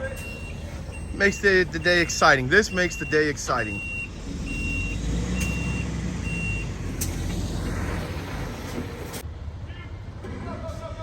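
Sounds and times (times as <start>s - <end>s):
truck reversing alarm beeping: 0.0s - 8.1s
truck engine running: 0.0s - 10.4s.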